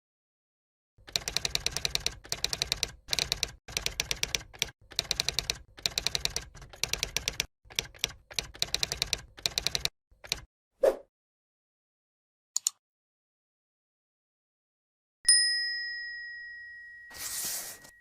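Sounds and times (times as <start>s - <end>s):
typewriter keys clacking: 1.1s - 10.5s.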